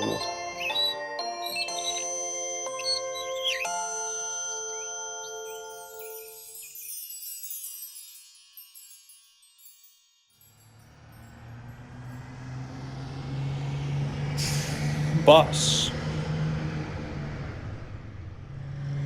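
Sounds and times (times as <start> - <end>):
chiming jingling flourish: 0.0 - 14.0
bus engine humming: 10.7 - 19.0.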